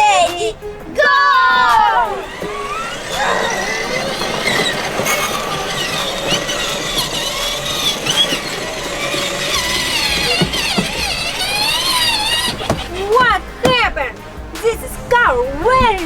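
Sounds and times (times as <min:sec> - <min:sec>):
ride-on toy cars running: 0:00.0 - 0:14.7.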